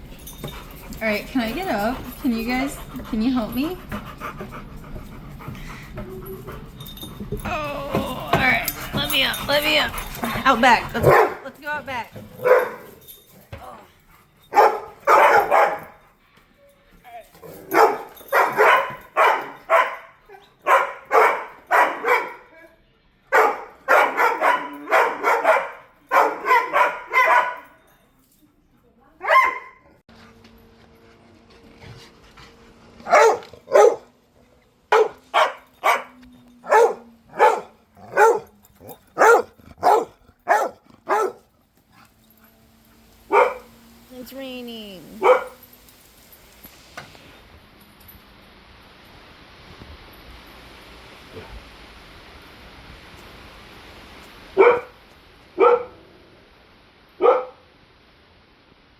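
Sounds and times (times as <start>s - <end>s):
dog barking: 11.0s - 11.5s, 12.4s - 13.0s, 14.5s - 16.0s, 17.6s - 22.6s, 23.3s - 27.8s, 29.2s - 29.9s, 33.0s - 34.1s, 34.9s - 41.5s, 43.3s - 43.8s, 45.2s - 45.6s, 54.6s - 55.0s, 55.6s - 56.0s, 57.2s - 57.7s.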